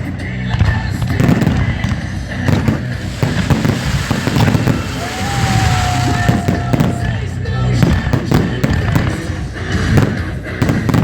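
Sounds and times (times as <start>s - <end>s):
fireworks bangs and crackles: 0.0s - 11.0s
long whistling tone: 2.6s - 7.3s.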